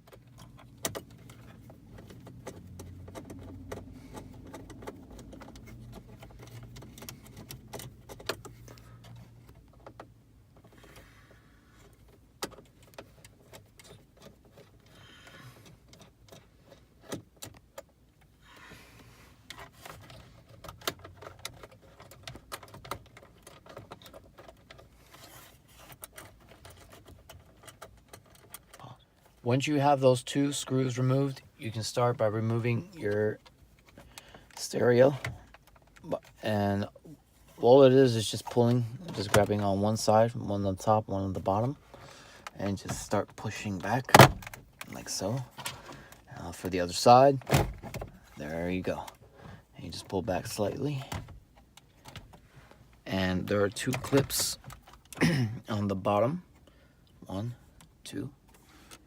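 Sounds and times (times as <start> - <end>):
small metallic rattles: 0.0 - 18.4, 19.4 - 29.4.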